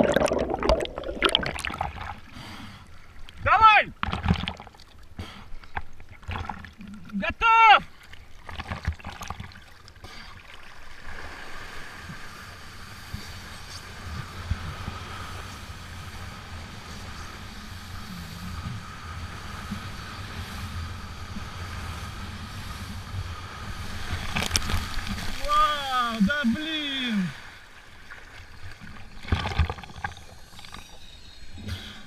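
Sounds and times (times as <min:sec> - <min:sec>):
water rushing and splashing: 0:00.0 - 0:02.3, 0:21.4 - 0:30.8.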